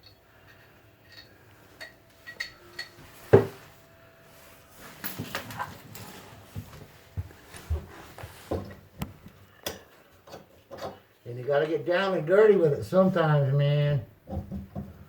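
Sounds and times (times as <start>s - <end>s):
wrench clinking on metal pipe: 0.0s - 3.0s.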